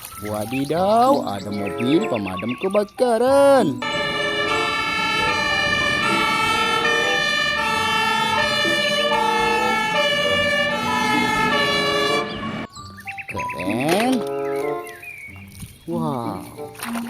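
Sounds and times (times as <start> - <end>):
electronic fire engine siren: 3.8 - 12.7.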